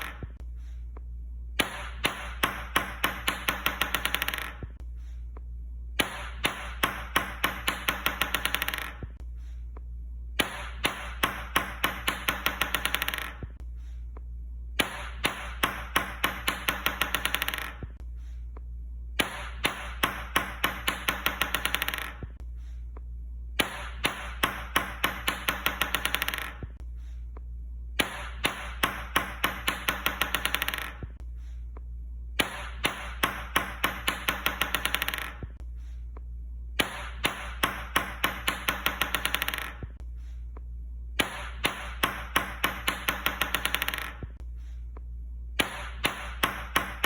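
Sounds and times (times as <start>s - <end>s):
ping-pong ball bouncing: 0.0s - 0.4s, 1.6s - 4.8s, 6.0s - 9.2s, 10.4s - 13.6s, 14.8s - 18.0s, 19.2s - 22.4s, 23.6s - 26.8s, 28.0s - 31.2s, 32.4s - 35.6s, 36.8s - 40.0s, 41.2s - 44.4s, 45.6s - 47.0s
low hum: 0.0s - 47.0s.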